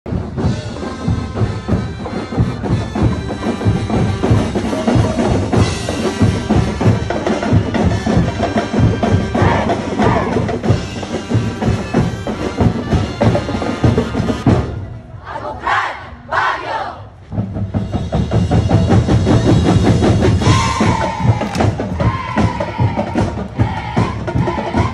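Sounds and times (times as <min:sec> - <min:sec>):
music with drums and percussion: 0:00.1 - 0:15.0, 0:17.3 - 0:24.9.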